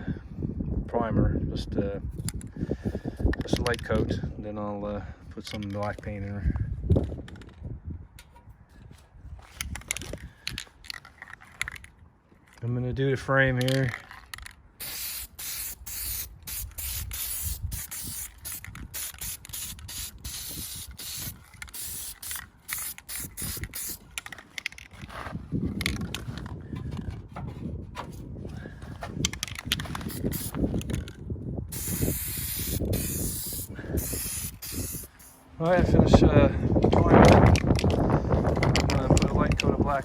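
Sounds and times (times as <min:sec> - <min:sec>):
wind rumbling on microphone: 0:00.0 - 0:14.8, 0:15.6 - 0:40.0
spray paint hissing: 0:14.8 - 0:24.9, 0:29.4 - 0:31.1, 0:31.7 - 0:35.4.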